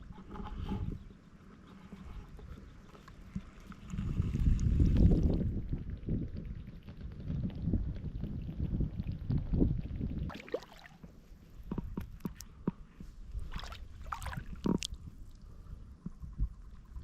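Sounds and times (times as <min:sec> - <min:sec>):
water splashes: 0:08.9 - 0:11.3, 0:13.3 - 0:15.1
mud squelching: 0:10.3 - 0:11.2, 0:13.3 - 0:15.4.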